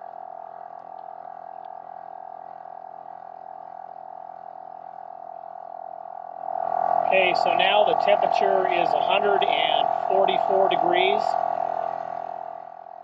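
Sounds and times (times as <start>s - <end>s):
air compressor buzzing hum: 6.6s - 12.8s.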